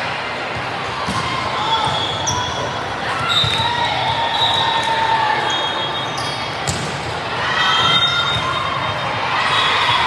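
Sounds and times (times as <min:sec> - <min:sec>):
sneakers squeaking on court: 0:01.7 - 0:04.7.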